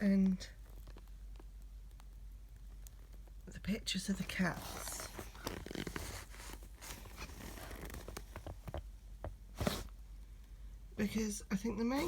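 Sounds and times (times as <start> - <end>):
canvas bag rustling: 4.1 - 8.8, 9.6 - 9.9.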